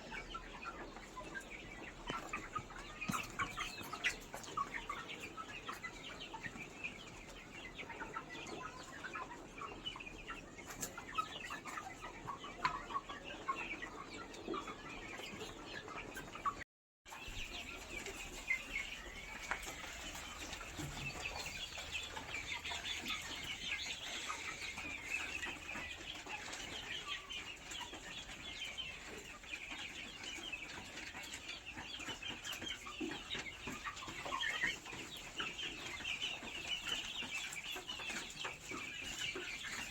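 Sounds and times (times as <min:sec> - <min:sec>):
chickens clucking and calling: 0:00.0 - 0:39.9.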